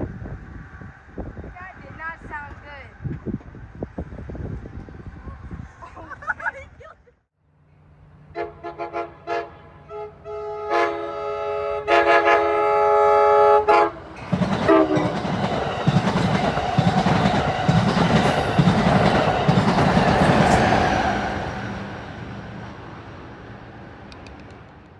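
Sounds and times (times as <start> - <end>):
train rumble and wheel clatter: 0.0 - 5.8, 11.2 - 24.9
locomotive horn blasts: 8.3 - 14.1, 14.7 - 15.2.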